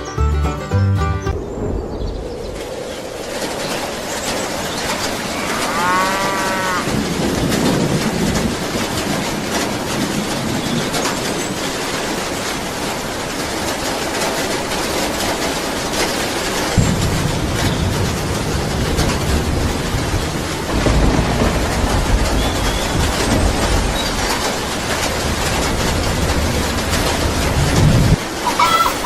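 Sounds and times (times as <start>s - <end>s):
cow mooing: 5.3s - 6.9s.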